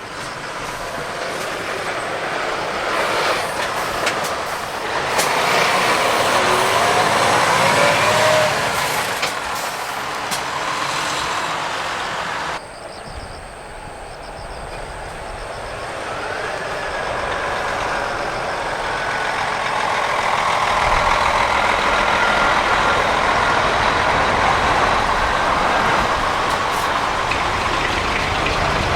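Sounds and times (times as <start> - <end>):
heavy diesel trucks driving: 0.0 - 28.9
sharp clicks: 3.6 - 6.5.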